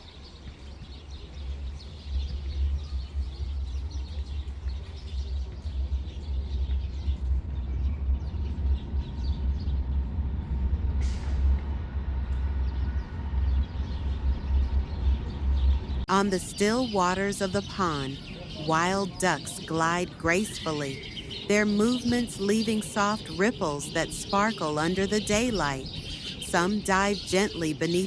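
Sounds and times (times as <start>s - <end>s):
gusting low rumble: 6.3s - 16.1s
small birds chirping faintly: 13.0s - 28.0s.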